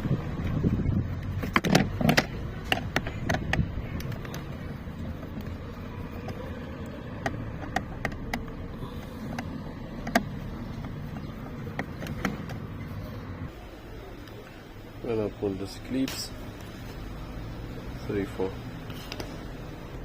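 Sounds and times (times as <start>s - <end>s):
steady low rumble: 0.0s - 15.4s.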